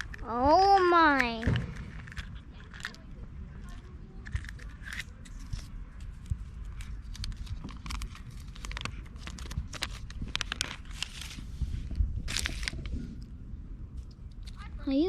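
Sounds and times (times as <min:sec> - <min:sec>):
foil wrapper crinkling and tearing: 0:00.0 - 0:00.2, 0:06.7 - 0:11.4, 0:12.2 - 0:12.9
plastic toy parts clicking: 0:00.0 - 0:03.0, 0:03.6 - 0:05.6
low steady rumble: 0:00.0 - 0:15.0.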